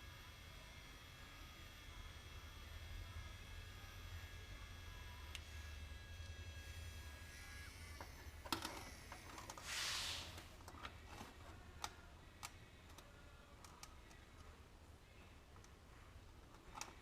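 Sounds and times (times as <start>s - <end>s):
faint thin whine: 0.0s - 17.0s
short soft hiss: 9.6s - 10.6s.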